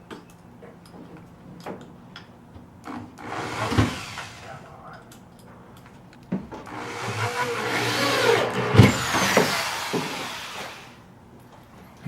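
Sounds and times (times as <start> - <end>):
power tool running: 2.9 - 4.7, 6.6 - 11.1.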